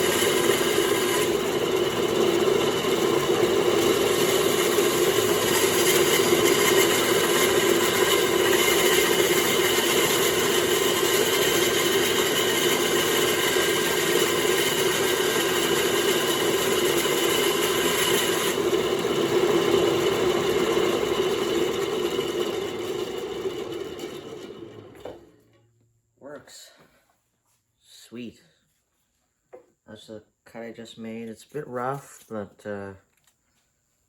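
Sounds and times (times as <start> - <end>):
bandsaw humming: 0.0 - 25.4.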